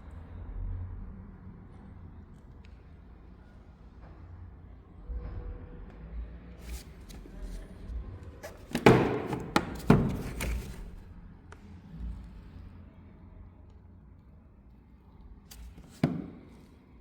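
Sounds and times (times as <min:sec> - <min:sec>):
sharp knocks and thuds: 0:08.4 - 0:10.9.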